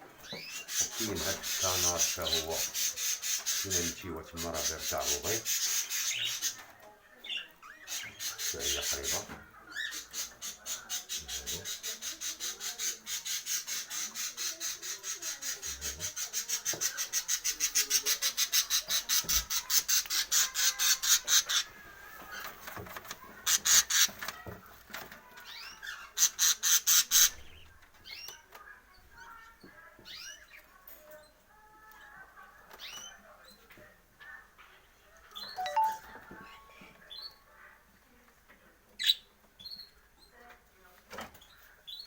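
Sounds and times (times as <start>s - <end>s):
soft bird chirps: 35.4s - 36.6s.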